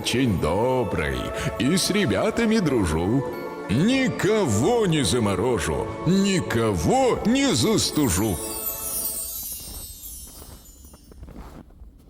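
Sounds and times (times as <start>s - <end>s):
song: 1.1s - 11.2s
faint crunches: 8.6s - 12.0s.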